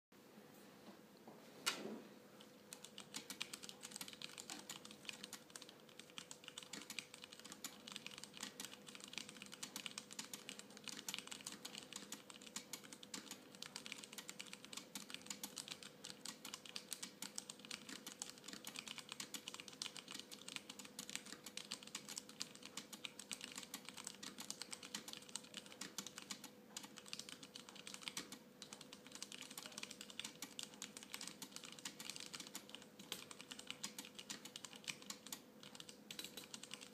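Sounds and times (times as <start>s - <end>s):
mechanical keyboard typing: 2.6s - 36.9s.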